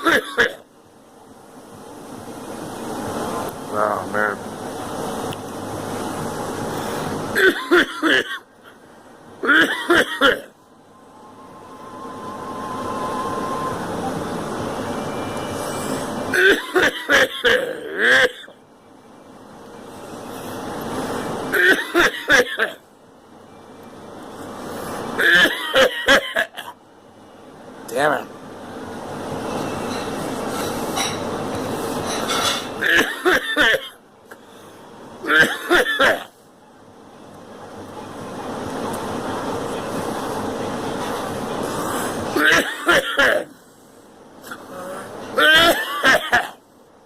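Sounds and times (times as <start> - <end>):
person coughing: 0.0 - 0.6, 7.4 - 8.4, 9.4 - 10.5, 16.3 - 18.5, 21.6 - 22.8, 25.2 - 26.6, 32.8 - 34.0, 35.3 - 36.3, 42.4 - 43.5, 44.5 - 46.6
steady rushing noise: 0.0 - 23.4, 24.0 - 35.2
steady noisy hiss: 0.0 - 47.0.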